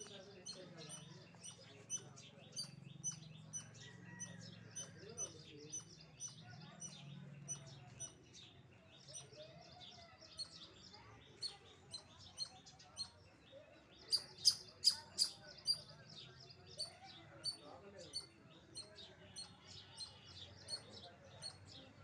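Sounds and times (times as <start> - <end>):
squirrel chirping: 0.0 - 3.7, 11.4 - 13.2, 14.1 - 15.9, 16.8 - 21.7.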